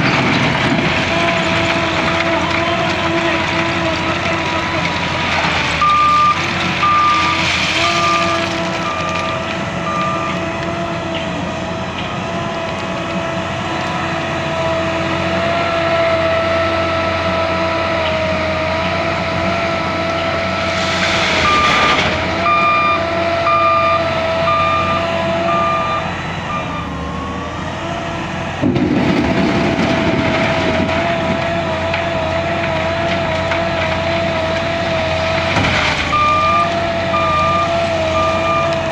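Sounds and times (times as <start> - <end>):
diesel engine running: 0.0 - 38.9
loud rough engine sound: 0.0 - 38.9
reversing alarm beeping: 5.8 - 10.6, 19.8 - 27.8, 36.0 - 38.9.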